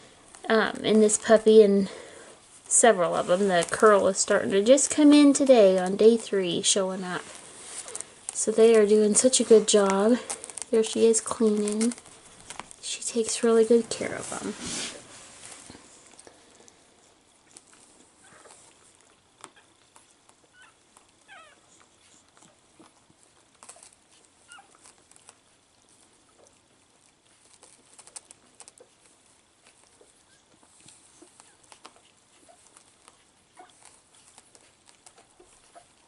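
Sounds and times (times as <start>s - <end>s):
rustling: 0.0s - 36.0s
puppies squeaking and squealing: 20.4s - 22.2s, 23.7s - 25.3s, 29.7s - 36.0s.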